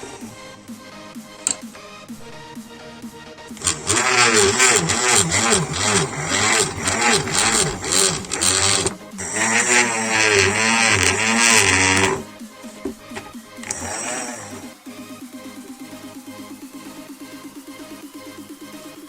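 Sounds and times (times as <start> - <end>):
drill motor whining: 3.6 - 12.3, 12.9 - 14.7.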